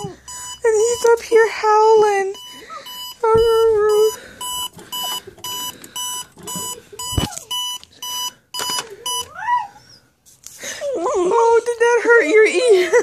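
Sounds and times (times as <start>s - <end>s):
alarm clock beeping: 0.0s - 9.3s.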